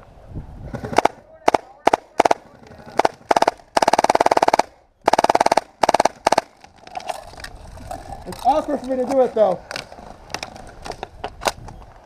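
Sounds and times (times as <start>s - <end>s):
airsoft gun firing full auto: 3.0s - 6.5s.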